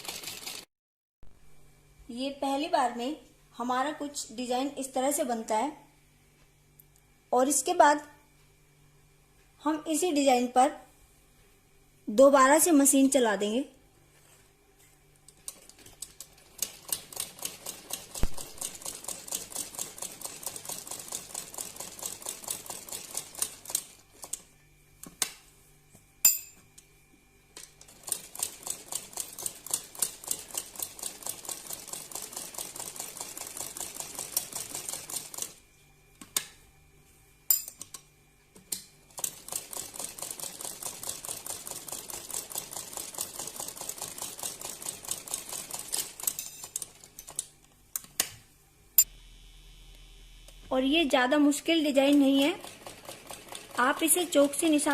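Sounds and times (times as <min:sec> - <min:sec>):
sewing machine stitching: 0:00.0 - 0:00.7, 0:52.0 - 0:54.9.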